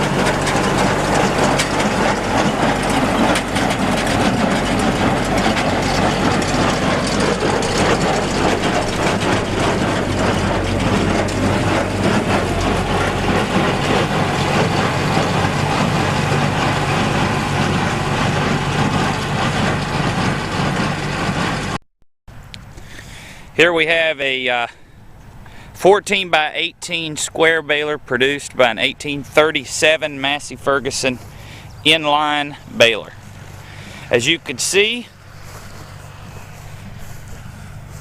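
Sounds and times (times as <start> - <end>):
baler mechanism clattering: 0.0 - 21.8
tractor engine running: 0.0 - 38.0.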